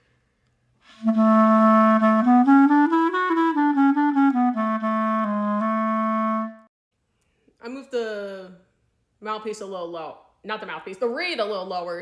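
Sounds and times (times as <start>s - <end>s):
clarinet playing: 0.8s - 6.7s.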